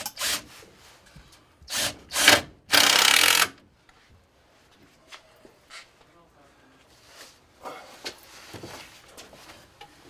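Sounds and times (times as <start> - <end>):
power drill driving screw into wood: 0.0 - 0.5, 1.7 - 3.6.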